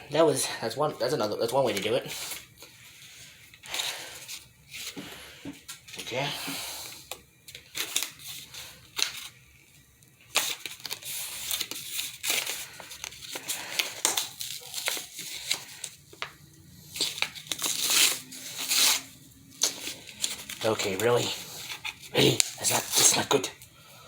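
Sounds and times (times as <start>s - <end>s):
packaging tearing and crinkling: 7.5s - 9.5s, 10.2s - 16.3s, 16.9s - 23.6s.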